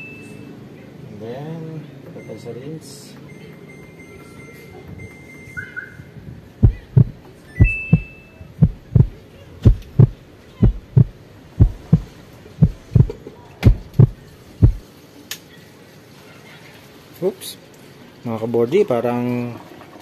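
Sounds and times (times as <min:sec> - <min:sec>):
washing machine low thumps: 0:06.6 - 0:14.8.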